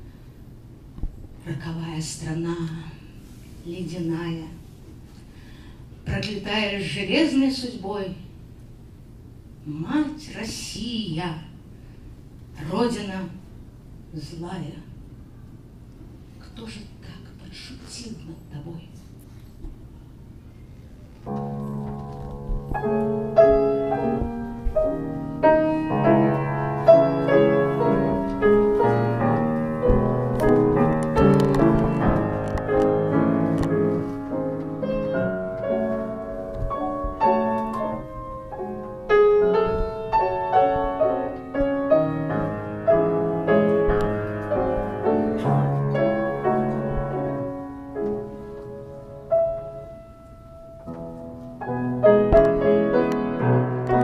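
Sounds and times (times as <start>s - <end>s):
solo piano melody: 21.2s - 54.0s.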